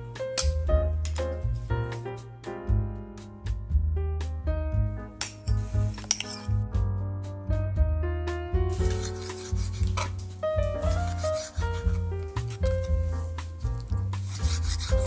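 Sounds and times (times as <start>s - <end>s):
instrumental music with pulsing bass: 0.0s - 15.0s
rasping scraping noise: 8.8s - 15.0s.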